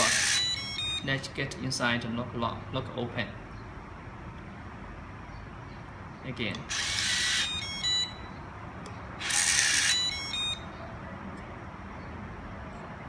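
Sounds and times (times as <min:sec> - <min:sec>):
electronic beep tones: 0:00.2 - 0:01.1, 0:07.1 - 0:08.4, 0:09.8 - 0:10.7
lock mechanism whirring: 0:06.7 - 0:07.9, 0:09.2 - 0:10.6.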